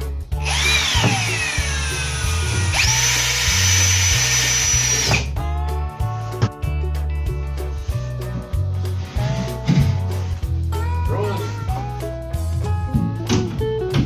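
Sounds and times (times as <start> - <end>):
power drill whining: 0.4 - 5.3.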